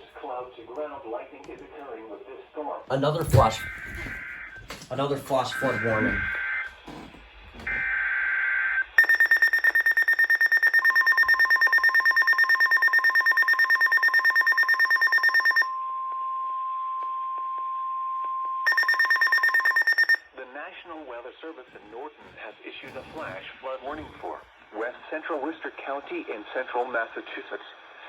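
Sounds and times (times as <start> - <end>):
steady warning alarm tone: 3.0 - 6.9, 7.5 - 15.9, 18.6 - 20.2
rapid alarm beeping: 3.2 - 6.7, 7.7 - 15.8, 18.7 - 20.2.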